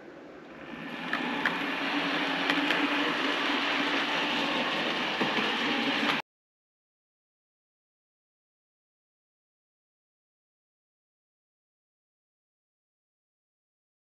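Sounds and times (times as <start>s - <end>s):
model train running on track: 0.5s - 6.2s.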